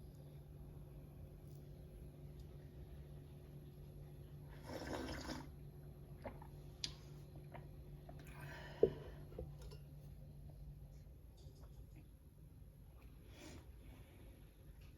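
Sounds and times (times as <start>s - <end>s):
low steady hum: 0.0s - 14.9s.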